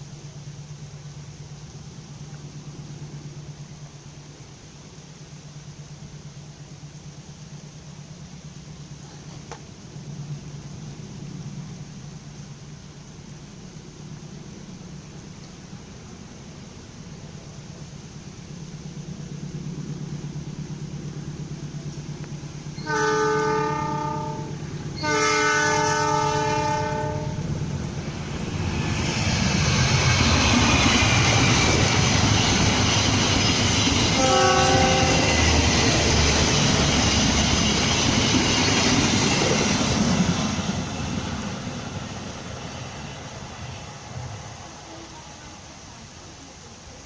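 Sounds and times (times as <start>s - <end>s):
train passing at speed: 0.0s - 47.0s
train horn blasts: 22.8s - 27.5s, 34.1s - 35.8s.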